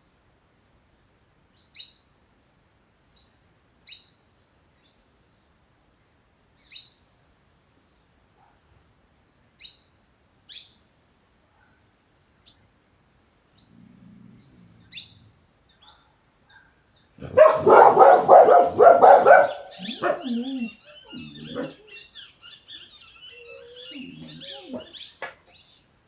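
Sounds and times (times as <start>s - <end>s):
dog barking: 15.8s - 21.9s
high bird chirps: 17.5s - 25.6s.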